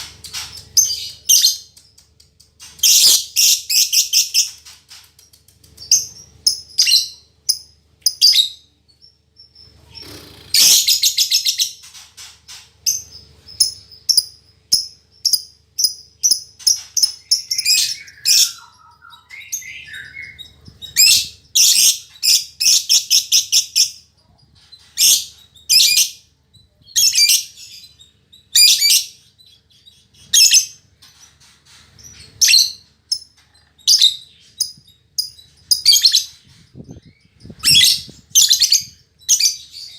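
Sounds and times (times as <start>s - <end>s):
lovebird chirping and screeching: 9.5s - 39.9s.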